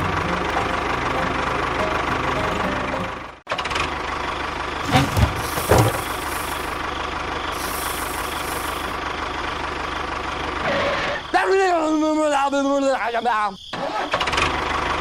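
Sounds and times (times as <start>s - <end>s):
small engine idling: 0.0s - 11.2s, 14.2s - 15.0s
heavy thuds: 4.8s - 6.8s.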